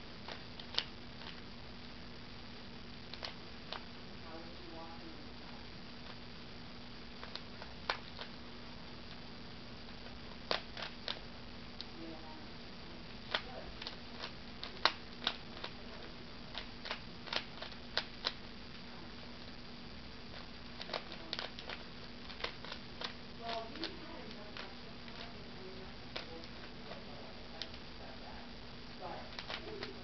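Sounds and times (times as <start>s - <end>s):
puzzle cube clicking as turned: 0.3s - 1.4s, 3.1s - 3.8s, 10.5s - 11.2s, 13.3s - 15.8s, 16.5s - 18.4s, 20.3s - 23.2s, 29.3s - 30.0s.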